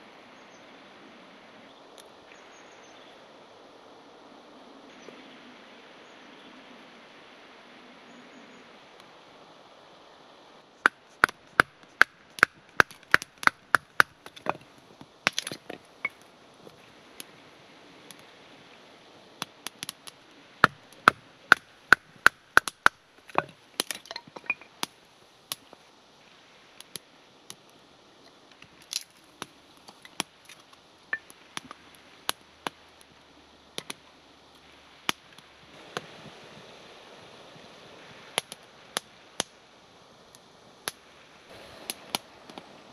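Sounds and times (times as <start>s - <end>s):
hand tool striking wood: 20.6s - 24.7s.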